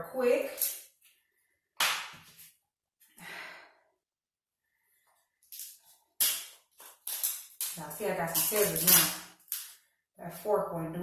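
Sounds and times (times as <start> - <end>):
crab shell cracking: 5.5 - 9.8.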